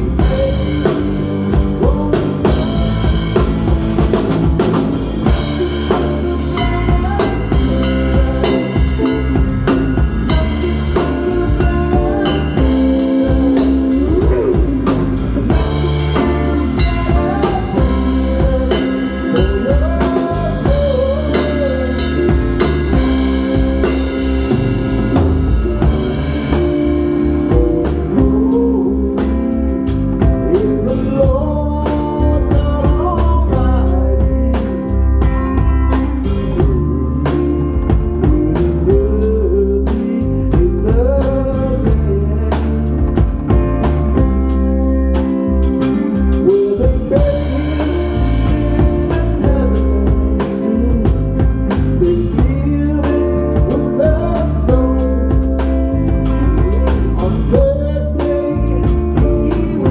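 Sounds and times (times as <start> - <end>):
cymbals: 0.0 - 28.2
rock band playing live: 0.0 - 59.9
sliding guitar lead line: 0.0 - 59.9.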